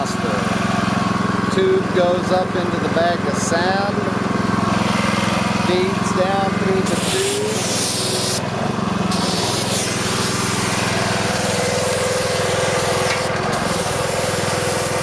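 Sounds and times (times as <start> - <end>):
small engine running: 0.0 - 15.0
sandblaster spray hissing: 5.7 - 15.0.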